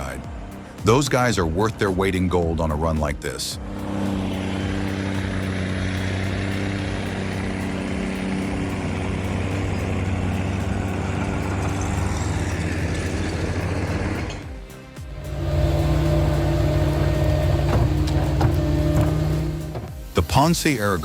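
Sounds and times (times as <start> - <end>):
truck diesel engine under load: 3.3 - 14.4, 15.1 - 19.9.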